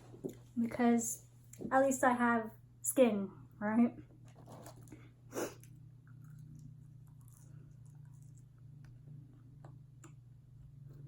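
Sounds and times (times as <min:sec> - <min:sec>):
chewing and wet mouth clicks: 0:05.6 - 0:09.0.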